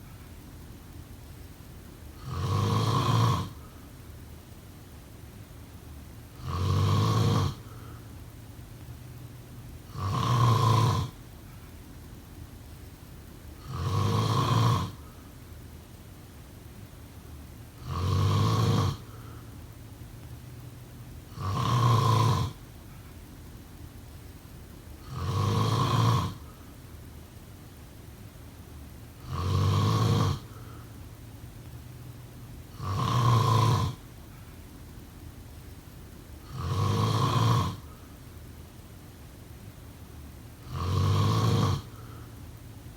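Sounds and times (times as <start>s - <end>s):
person snoring: 2.2s - 3.7s, 6.4s - 8.0s, 9.9s - 11.2s, 13.6s - 15.2s, 17.8s - 19.5s, 21.3s - 22.6s, 25.0s - 26.6s, 29.2s - 31.0s, 32.7s - 34.1s, 36.4s - 38.0s, 40.6s - 42.4s.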